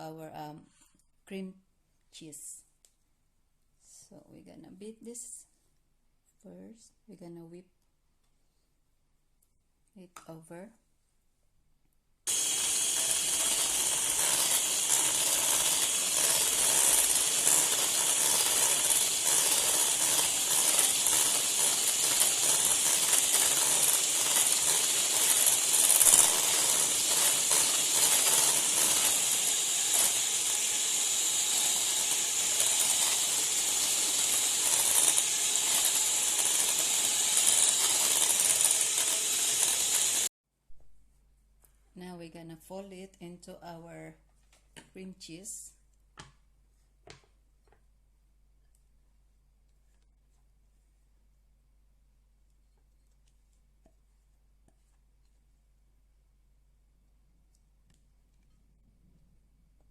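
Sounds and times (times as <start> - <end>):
electric mixer whirring: 12.3 - 40.3.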